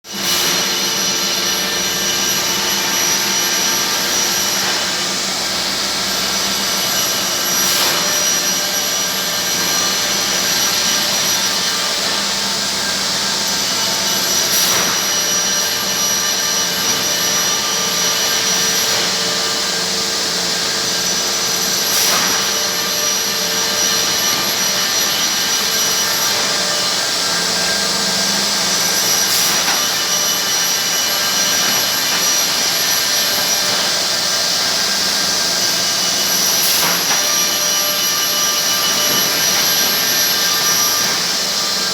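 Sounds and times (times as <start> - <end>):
machinery whining tones: 0.2 - 41.9
machinery hiss: 21.1 - 41.9.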